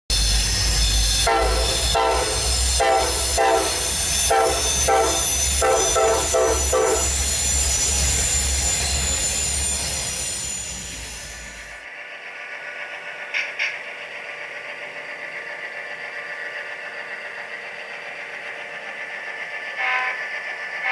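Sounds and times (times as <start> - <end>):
locomotive engine running: 0.1 - 20.9
locomotive horn blasts: 1.2 - 7.1, 19.8 - 20.2.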